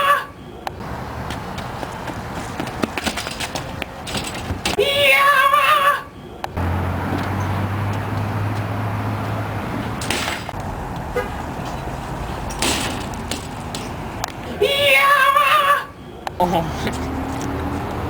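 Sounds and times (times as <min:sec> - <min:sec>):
motor vehicle running: 0:06.4 - 0:14.6, 0:16.2 - 0:18.0.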